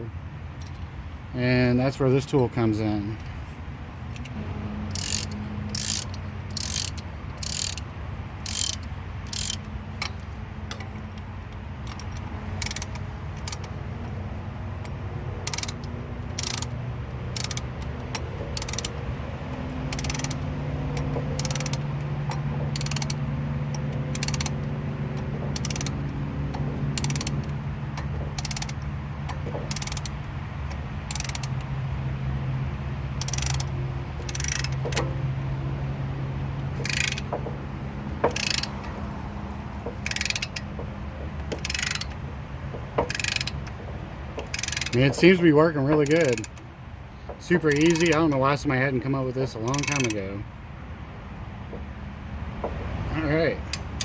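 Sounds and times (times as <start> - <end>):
ratcheting tool clicking: 4.9 - 10.9, 11.8 - 13.8, 14.8 - 19.0, 19.6 - 31.6, 33.2 - 35.1, 36.6 - 37.6, 38.2 - 39.0, 39.8 - 46.6, 47.6 - 48.4, 49.7 - 50.2.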